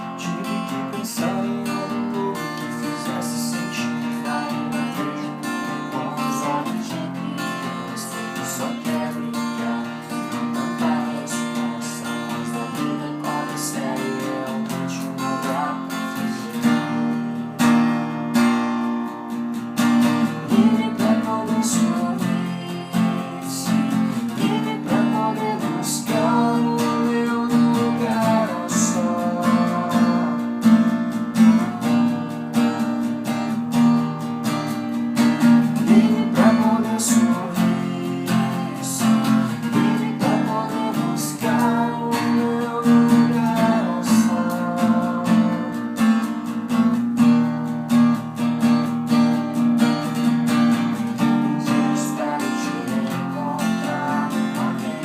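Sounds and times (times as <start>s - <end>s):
acoustic guitar strumming chords: 0.0s - 55.0s.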